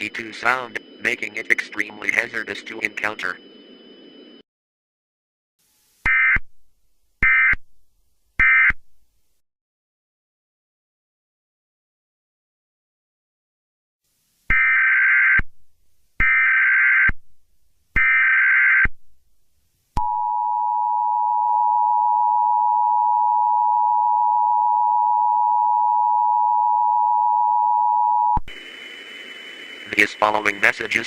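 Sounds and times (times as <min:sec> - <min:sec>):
digital data header bursts: 0:00.0 - 0:03.4, 0:28.5 - 0:31.0
two-tone attention signal: 0:00.0 - 0:03.4
harsh data warble: 0:00.0 - 0:04.4, 0:28.5 - 0:31.0.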